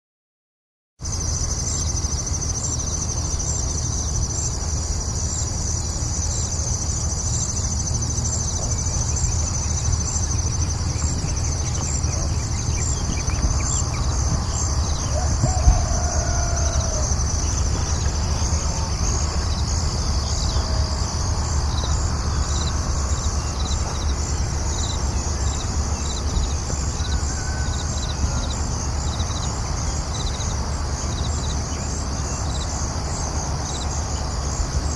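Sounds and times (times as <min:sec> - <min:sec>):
insects chirping: 0:01.0 - 0:34.9
bird calls: 0:07.3 - 0:32.6.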